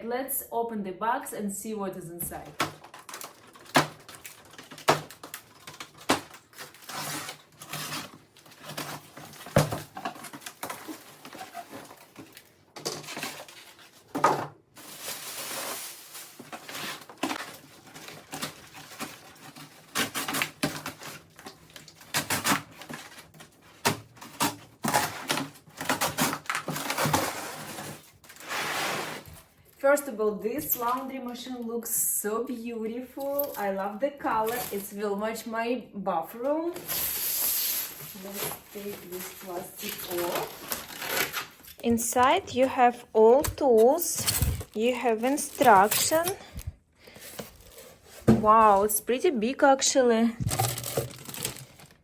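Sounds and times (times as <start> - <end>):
cardboard box being unpacked: 2.5 - 14.2, 14.8 - 29.5, 37.8 - 49.0, 50.4 - 52.0
packaging rustling: 2.5 - 28.7, 36.8 - 49.0, 50.4 - 52.0.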